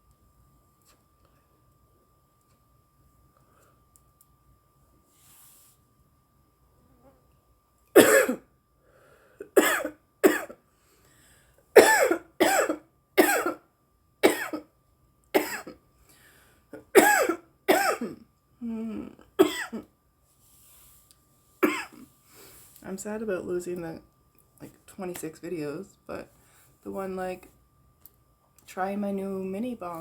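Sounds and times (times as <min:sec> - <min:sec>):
woman coughing: 0:08.0 - 0:08.5, 0:09.5 - 0:10.6, 0:11.8 - 0:13.6, 0:14.2 - 0:14.7, 0:15.4 - 0:15.8, 0:16.8 - 0:18.2, 0:19.4 - 0:19.9, 0:21.6 - 0:22.1.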